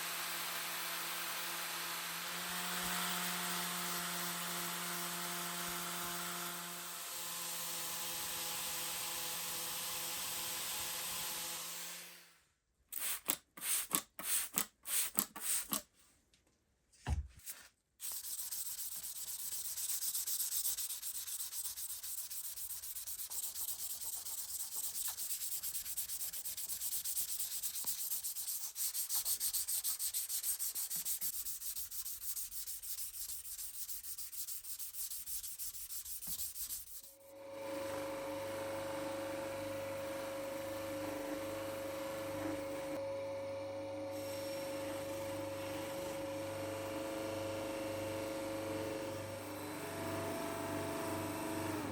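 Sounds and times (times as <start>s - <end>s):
electric grinder on metal: 0.0s - 12.3s.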